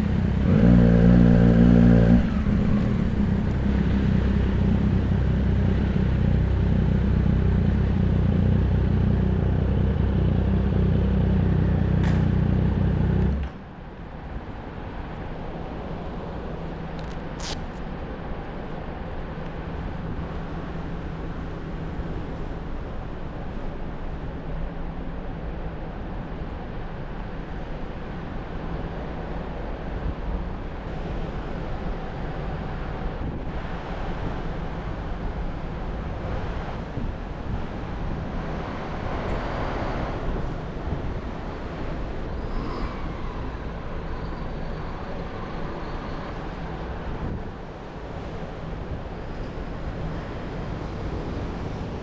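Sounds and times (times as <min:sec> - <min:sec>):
motorcycle engine cruising: 0:00.0 - 0:14.0.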